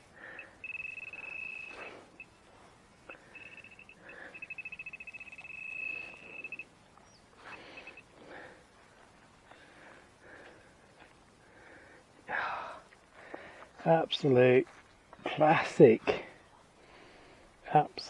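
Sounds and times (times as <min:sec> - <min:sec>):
metal detector pulsing tone: 0:00.0 - 0:02.4, 0:03.1 - 0:06.7, 0:07.4 - 0:08.0.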